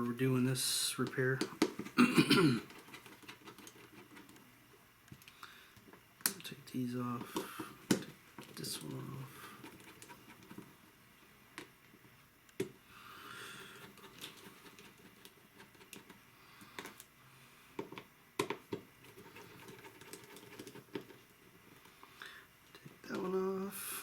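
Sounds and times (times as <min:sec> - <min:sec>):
soft handling rustle: 0:02.6 - 0:12.2.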